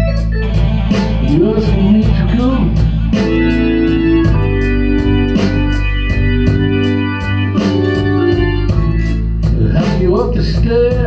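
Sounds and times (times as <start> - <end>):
bass: 0.0 - 11.0
organ chords: 0.0 - 11.0
steady drum beat: 0.0 - 11.0.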